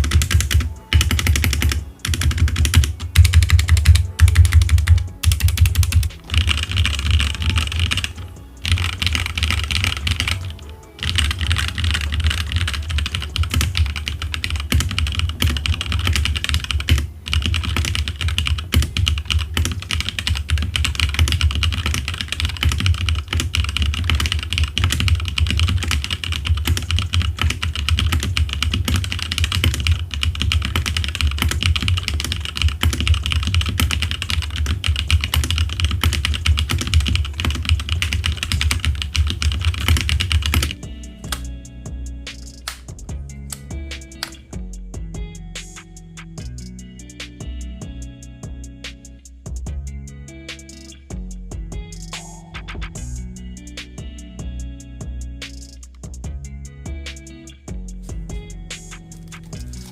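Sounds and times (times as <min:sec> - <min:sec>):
mechanical keyboard typing: 0:00.0 - 0:41.5, 0:59.2 - 0:59.9.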